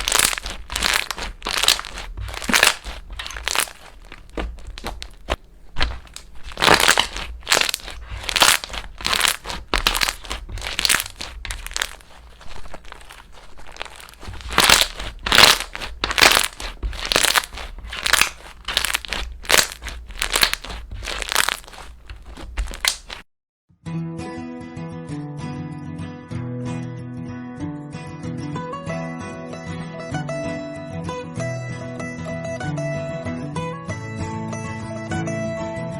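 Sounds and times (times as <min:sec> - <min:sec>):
slime squishing by hand: 0:00.0 - 0:23.2.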